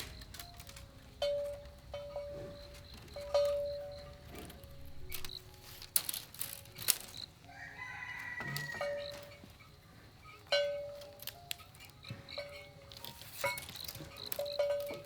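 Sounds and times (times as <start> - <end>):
rooster crowing: 7.4 - 10.4.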